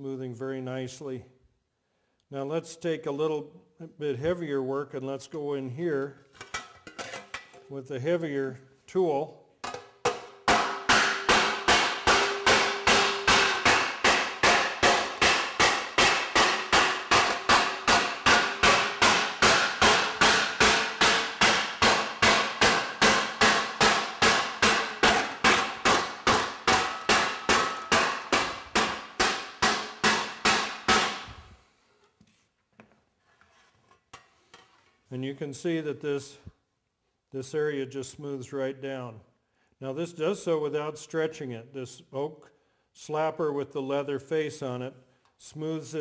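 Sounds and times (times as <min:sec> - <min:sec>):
mallet striking ringing metal panel: 0:10.1 - 0:31.4.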